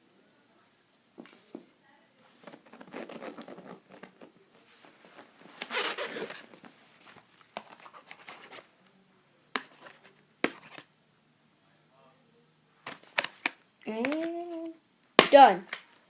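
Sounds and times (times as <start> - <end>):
scratchy rustling and scraping: 2.2 - 8.7
zipper-like rasp: 2.4 - 6.7.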